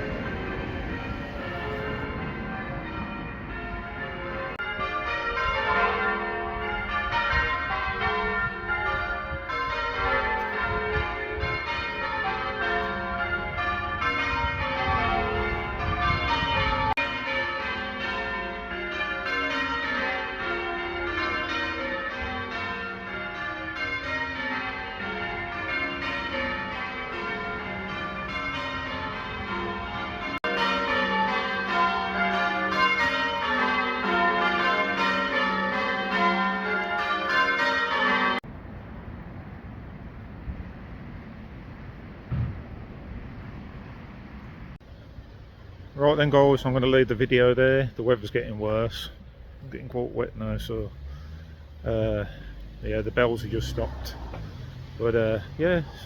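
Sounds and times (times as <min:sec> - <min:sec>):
church bells change-ringing: 0:00.0 - 0:38.5, 0:49.9 - 0:56.0.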